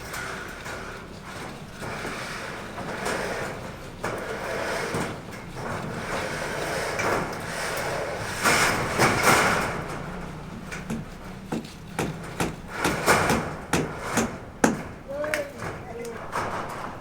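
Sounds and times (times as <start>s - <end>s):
scraping rushing noises: 1.4s - 17.0s
sharp knocks: 9.0s - 15.8s.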